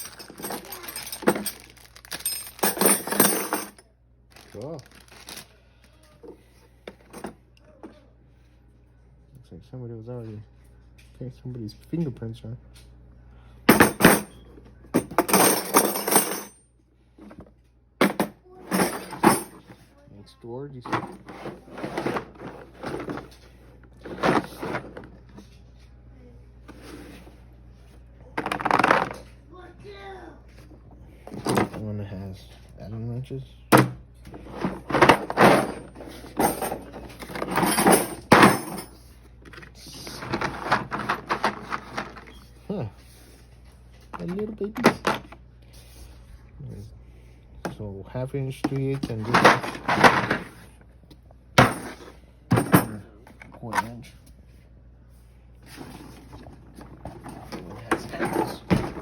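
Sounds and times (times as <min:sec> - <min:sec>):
metal tools clinking: 0:00.0 - 0:03.8, 0:13.7 - 0:14.4, 0:15.0 - 0:16.6, 0:18.0 - 0:19.7, 0:34.6 - 0:39.1.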